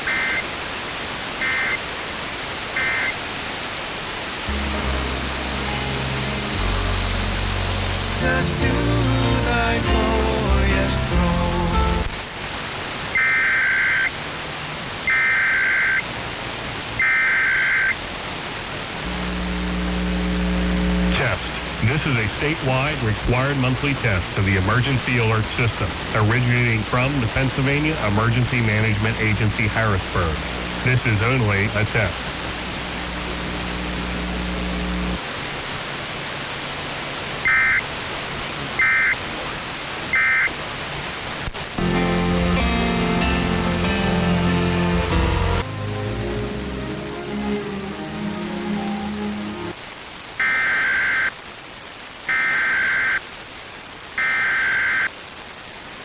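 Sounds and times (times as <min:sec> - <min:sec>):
radio hiss: 0:00.0 - 0:08.5, 0:11.4 - 0:14.2, 0:15.0 - 0:42.0, 0:49.7 - 0:56.0
low buzzing tone: 0:04.5 - 0:08.2, 0:19.0 - 0:21.9, 0:30.1 - 0:31.0, 0:32.1 - 0:35.2
station music: 0:04.5 - 0:12.1, 0:19.0 - 0:35.2, 0:41.8 - 0:49.8
screeching digital data tones: 0:15.1 - 0:16.0, 0:17.0 - 0:18.0.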